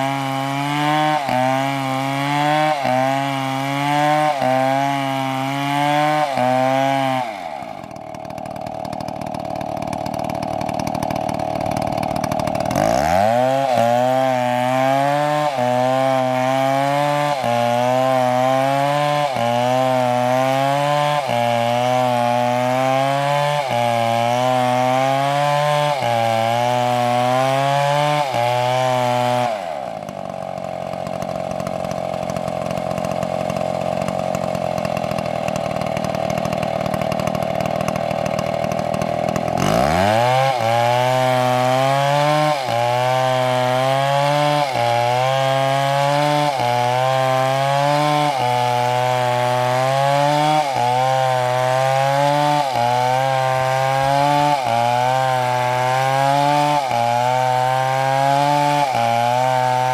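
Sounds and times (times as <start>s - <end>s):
chainsaw cutting wood: 0.0s - 59.9s.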